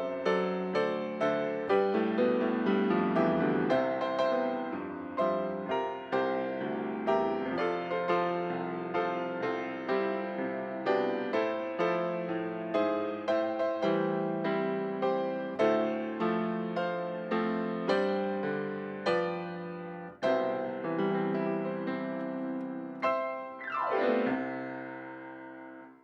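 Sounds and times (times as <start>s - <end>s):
gentle piano piece: 0.0s - 26.0s.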